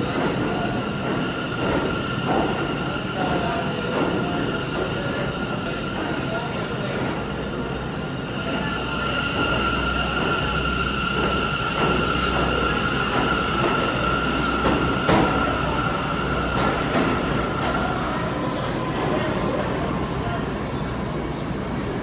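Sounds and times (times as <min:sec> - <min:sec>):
subway train rumbling past: 0:00.0 - 0:22.0.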